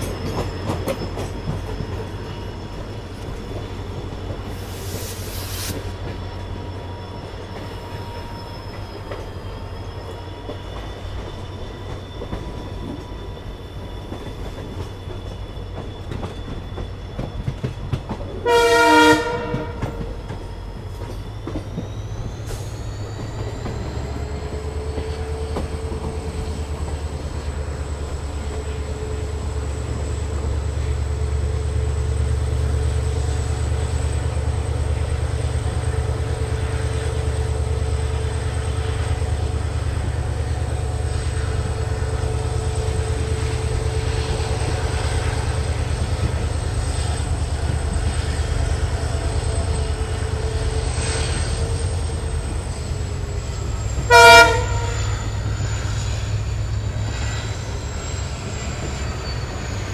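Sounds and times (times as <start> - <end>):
locomotive engine hum: 0.0 - 59.9
train running rumble: 0.0 - 59.9
train horn blast: 18.4 - 20.2, 53.9 - 56.0.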